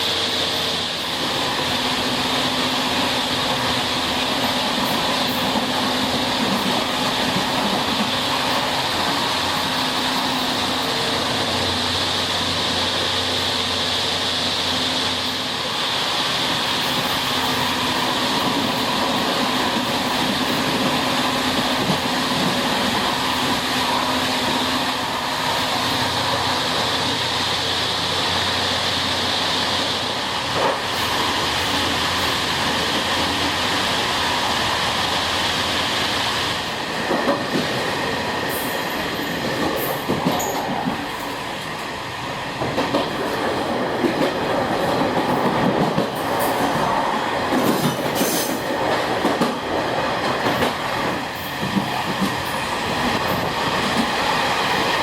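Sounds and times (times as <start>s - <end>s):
train coaches rolling: 0.0s - 55.0s.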